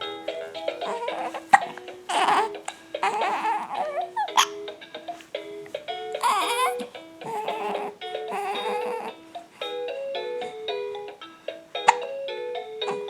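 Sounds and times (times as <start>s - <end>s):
recorded animal calls: 0.3s - 4.7s, 6.1s - 9.3s.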